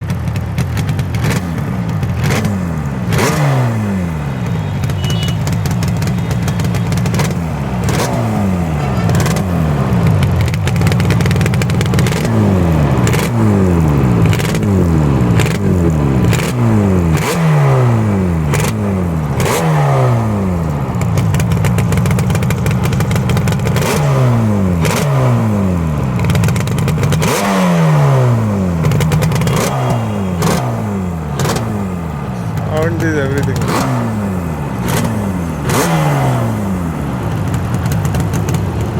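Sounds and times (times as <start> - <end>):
exhaust cracks: 0.0 - 38.9
two-stroke engine revving: 0.0 - 38.9.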